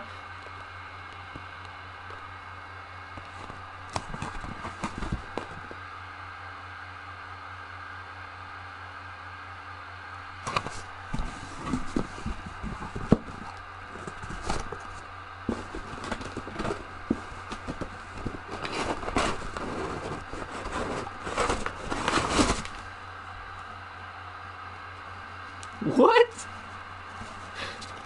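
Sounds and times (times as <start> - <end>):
steady electrical hum: 0.0 - 28.0
cardboard and paper packaging torn: 10.5 - 22.9.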